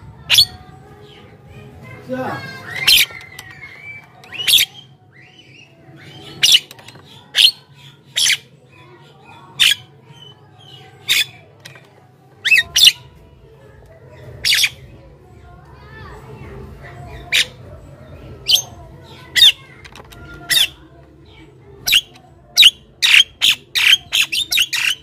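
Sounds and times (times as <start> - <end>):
soft bird chattering: 0.1 - 1.3, 2.4 - 13.2, 14.2 - 15.2, 16.1 - 25.0
bird squawking calls: 0.3 - 0.6, 2.4 - 4.8, 12.4 - 13.0, 21.8 - 25.0.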